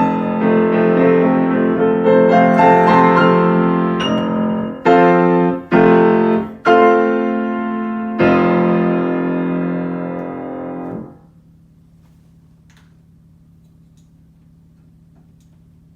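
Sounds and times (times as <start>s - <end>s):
piano chords: 0.0s - 11.2s.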